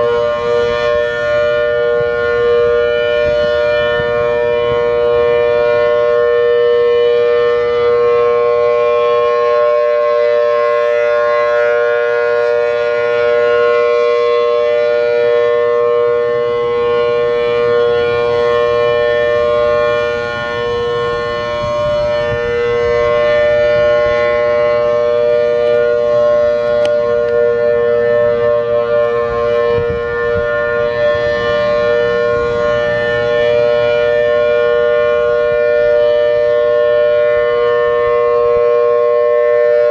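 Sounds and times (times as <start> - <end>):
warning siren two-note chord: 0.0 - 39.9.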